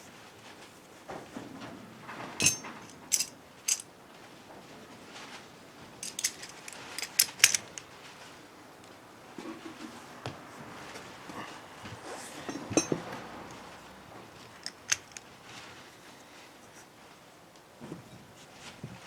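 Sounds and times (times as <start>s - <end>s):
metal tools clinking: 2.4s - 3.9s, 6.0s - 7.9s, 12.5s - 13.0s, 14.4s - 15.3s.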